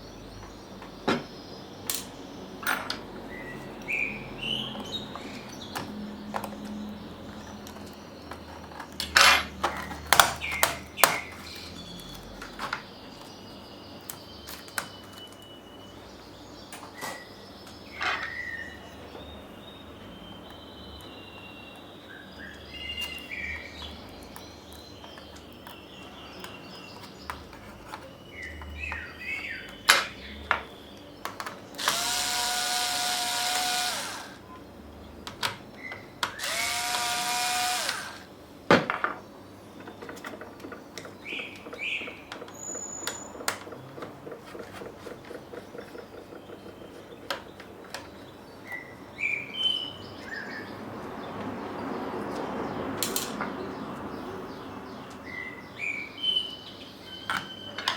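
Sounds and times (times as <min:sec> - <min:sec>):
electric screwdriver motor whine: 0:31.8 - 0:34.4, 0:36.4 - 0:38.3.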